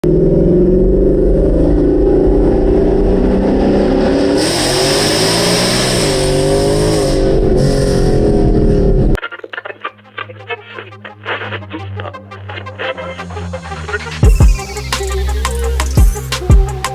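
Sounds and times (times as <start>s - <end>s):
loud car engine exhaust: 0.0s - 9.2s.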